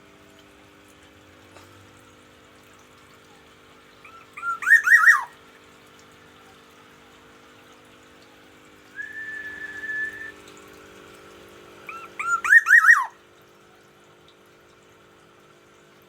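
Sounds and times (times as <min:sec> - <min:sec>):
bird calling: 0:04.0 - 0:05.4, 0:09.0 - 0:10.4, 0:11.9 - 0:13.2.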